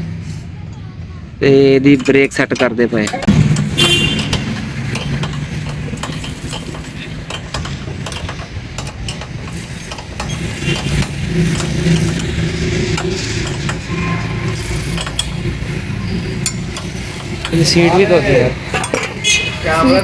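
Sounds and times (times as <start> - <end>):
engine running: 0.0 - 20.0
metallic clicks of hand tools: 1.9 - 19.4.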